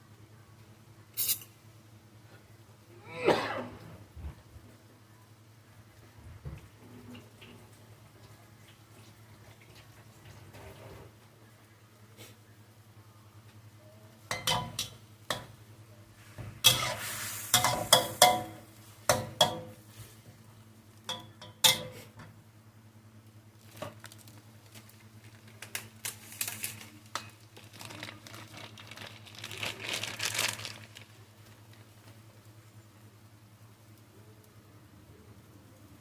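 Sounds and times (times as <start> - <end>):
metal utensil scraping a pan: 16.6 - 18.6.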